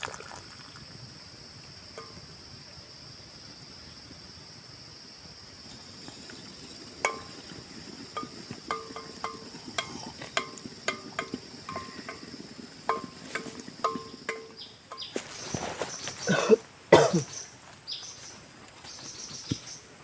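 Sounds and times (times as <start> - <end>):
insects droning: 0.0 - 20.0
metallic clinking knocks: 7.0 - 15.2.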